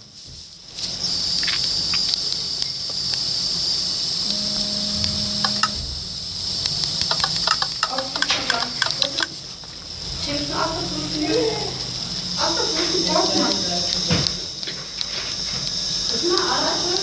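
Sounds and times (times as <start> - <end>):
insects chirring: 0.0 - 17.0
short low hum: 2.6 - 10.2.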